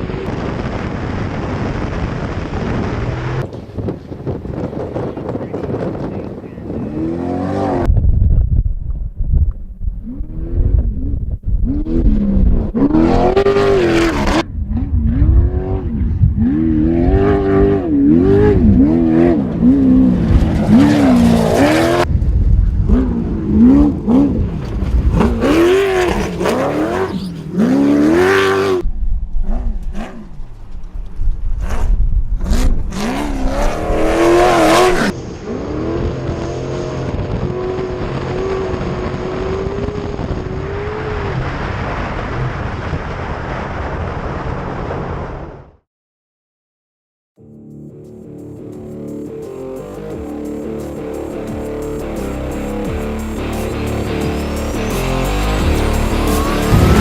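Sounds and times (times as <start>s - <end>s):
race car engine revving: 10.0s - 22.1s, 22.9s - 28.9s, 31.6s - 41.6s, 48.4s - 57.0s.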